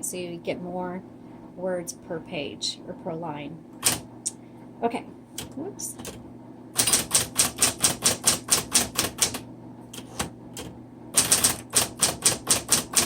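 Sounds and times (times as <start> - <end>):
electric typewriter typing: 3.8 - 4.1, 5.4 - 6.2, 6.8 - 13.0.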